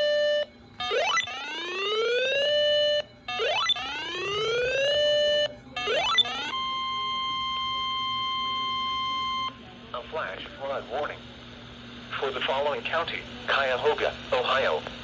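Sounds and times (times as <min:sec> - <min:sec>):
electronic whoop alarm: 0:00.0 - 0:09.6.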